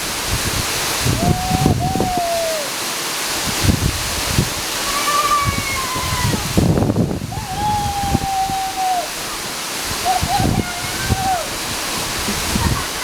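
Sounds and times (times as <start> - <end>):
waterfall rushing: 0.0 - 13.0
person calling out: 1.2 - 2.7, 7.3 - 9.3, 10.0 - 11.6.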